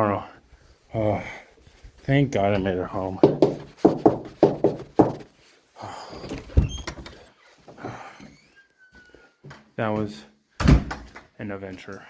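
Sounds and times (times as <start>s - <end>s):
heavy footsteps: 1.8s - 5.4s
door squeak: 6.3s - 7.2s, 8.2s - 9.3s.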